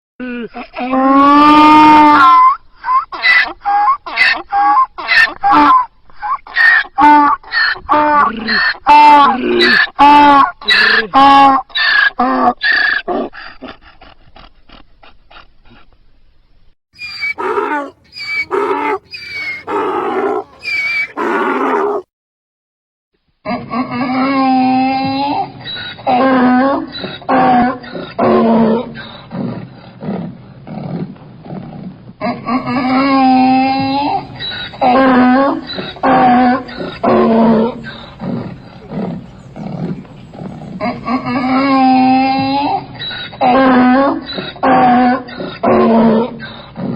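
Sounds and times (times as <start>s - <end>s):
donkey braying: 17.0s - 22.1s, 32.4s - 46.2s.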